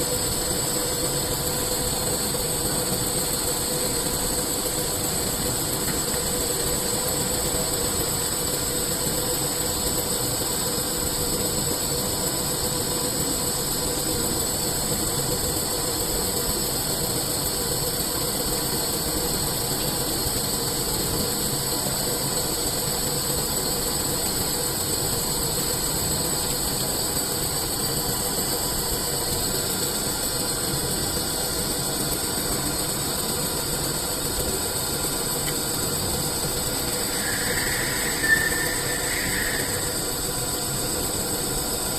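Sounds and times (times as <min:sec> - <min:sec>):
high-pitched machine whine: 0:00.0 - 0:41.9
lathe machining metal: 0:36.5 - 0:41.0.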